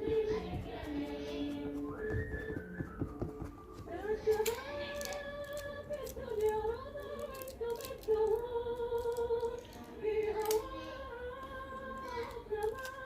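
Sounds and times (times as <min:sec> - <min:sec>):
woman singing sliding notes: 0:03.7 - 0:13.0.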